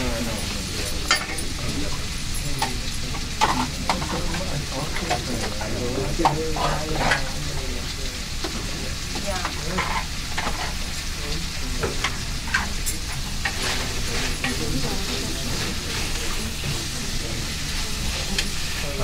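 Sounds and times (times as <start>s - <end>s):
vegetables sizzling in hot oil: 0.0s - 19.0s
spoon scraping against pan: 9.4s - 10.9s.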